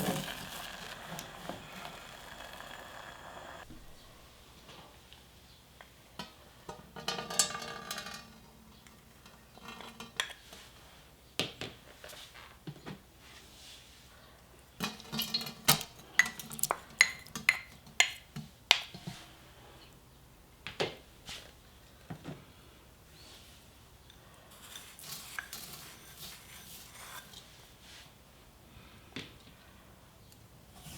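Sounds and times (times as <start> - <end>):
scraping rustle: 0.0 - 4.0.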